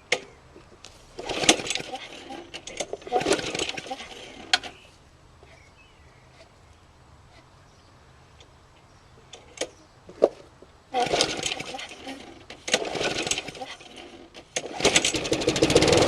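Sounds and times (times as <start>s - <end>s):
lawnmower recoil starter cranking: 1.2s - 4.8s, 11.0s - 16.0s.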